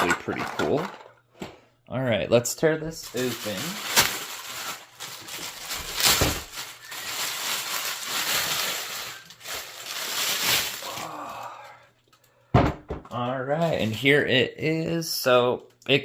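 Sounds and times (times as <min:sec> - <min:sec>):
packaging being torn and rustled: 0:03.0 - 0:11.6.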